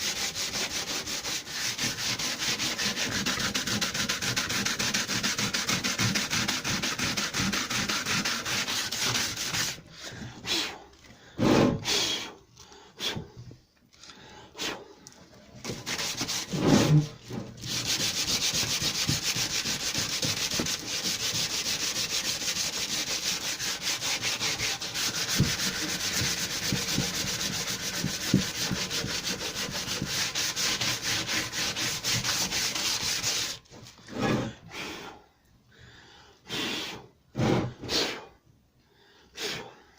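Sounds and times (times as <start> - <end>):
sanding metal filler rasping: 0.0 - 9.8, 15.7 - 33.6.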